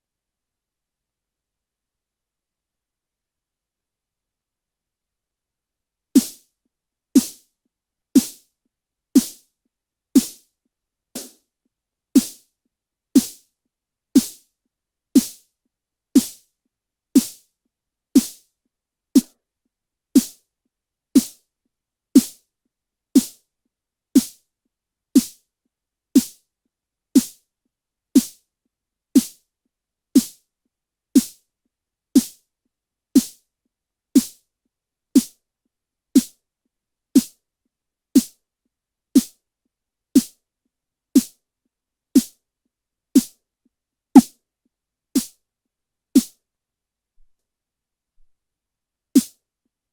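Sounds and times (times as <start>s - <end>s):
synthesized snare drum hits: 11.2s - 11.4s.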